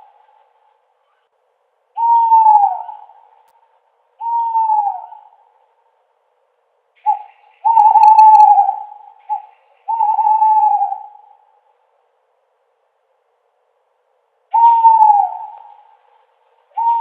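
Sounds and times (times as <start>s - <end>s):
owl hooting: 1.9s - 3.4s, 4.2s - 5.7s, 7.0s - 11.7s, 14.5s - 17.0s.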